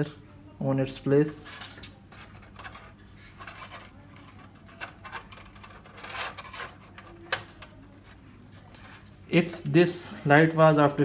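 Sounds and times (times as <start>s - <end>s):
light scrapes: 1.4s - 9.6s.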